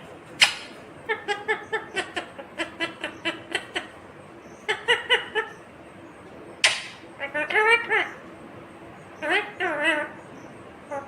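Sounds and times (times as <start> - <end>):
parakeet chattering: 0.3 - 5.8, 6.6 - 8.3, 9.1 - 11.0.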